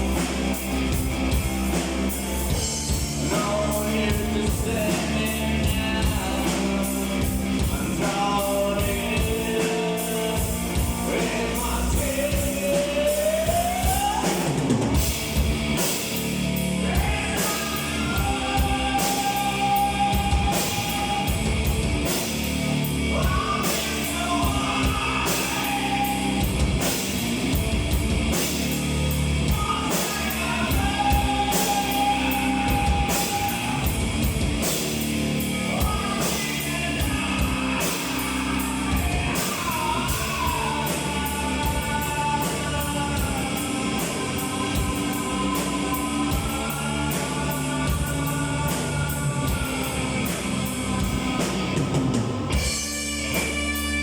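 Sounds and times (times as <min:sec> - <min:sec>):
drum kit and cymbals: 0:00.0 - 0:54.0
electric guitars: 0:00.0 - 0:54.0
live rock band playing: 0:00.0 - 0:54.0.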